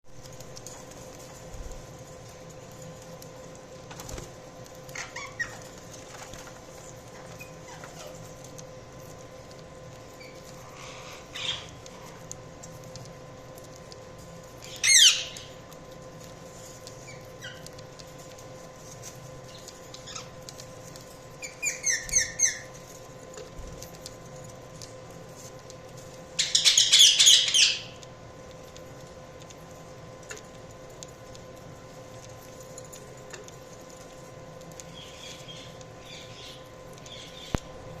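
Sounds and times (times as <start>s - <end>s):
faint steady hum: 0.0s - 38.0s
budgerigars chirping: 26.4s - 27.9s.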